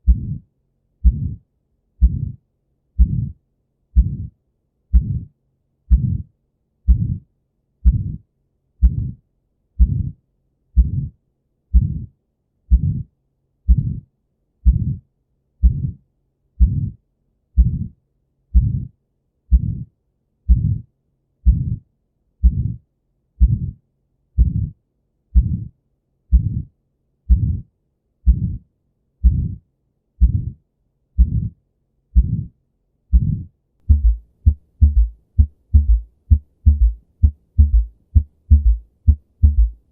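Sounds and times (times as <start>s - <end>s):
heartbeat through stethoscope: 0.0s - 0.4s, 1.0s - 1.4s, 2.0s - 2.4s, 3.0s - 3.4s, 4.0s - 4.3s, 4.9s - 5.3s, 5.9s - 6.3s, 6.9s - 7.2s, 7.8s - 8.2s, 8.8s - 9.2s, 9.8s - 10.2s, 10.8s - 11.1s, 11.7s - 12.1s, 12.7s - 13.1s, 13.7s - 14.0s, 14.6s - 15.0s, 15.6s - 16.0s, 16.6s - 17.0s, 17.6s - 17.9s, 18.6s - 18.9s, 19.5s - 19.8s, 20.5s - 20.8s, 21.4s - 21.8s, 22.4s - 22.8s, 23.4s - 23.8s, 24.4s - 24.7s, 25.4s - 25.7s, 26.3s - 26.7s, 27.3s - 27.6s, 28.3s - 28.6s, 29.2s - 29.6s, 30.2s - 30.6s, 31.2s - 31.6s, 32.2s - 32.5s, 33.1s - 39.8s.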